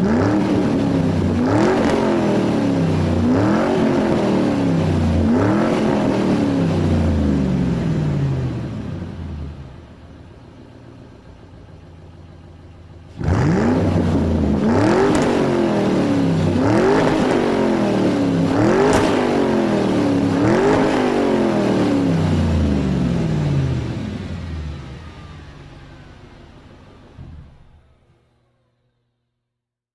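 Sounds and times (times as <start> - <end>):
car engine revving: 0.0 - 28.2
sharp cracks: 14.8 - 16.0, 16.6 - 21.3.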